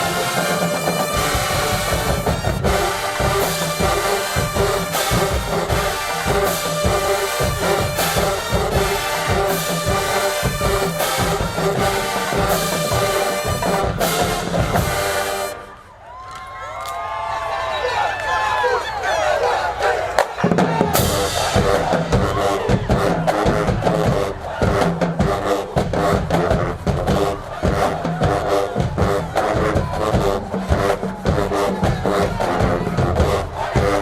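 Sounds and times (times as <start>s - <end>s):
drumline steady beat: 0.0s - 15.9s, 19.9s - 34.0s
marching band brass section: 0.0s - 16.3s, 17.6s - 34.0s.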